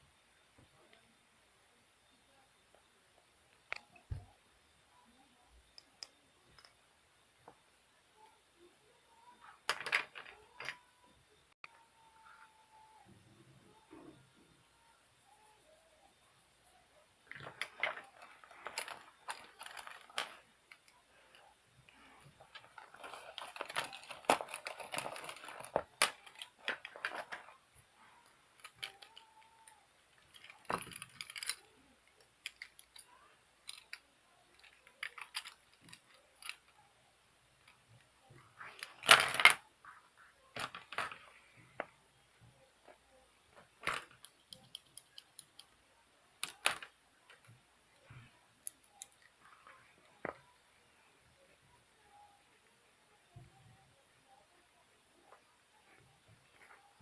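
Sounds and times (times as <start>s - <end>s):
pens clicking and clattering: 9.6s - 10.8s, 17.2s - 27.6s, 28.2s - 36.8s, 38.6s - 39.6s, 43.6s - 45.8s, 46.4s - 50.4s
rustling: 16.6s - 36.8s.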